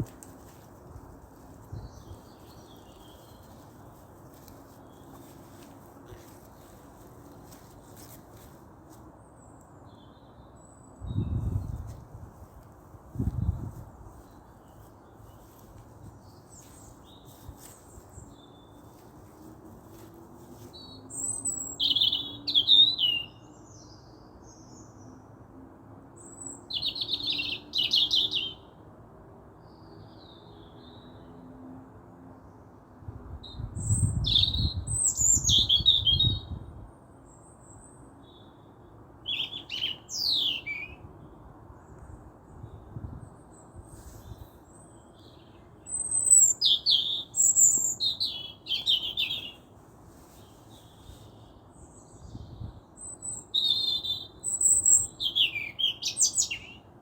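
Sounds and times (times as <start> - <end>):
birds chirping and trilling: 39.3 - 41.0, 44.1 - 49.7, 50.3 - 56.9.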